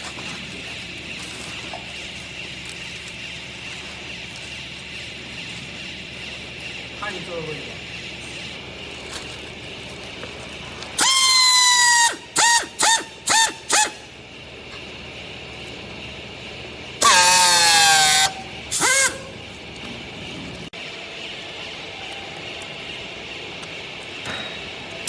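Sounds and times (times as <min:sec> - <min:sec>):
high-pitched horn honking: 0:11.0 - 0:14.0, 0:17.0 - 0:19.4.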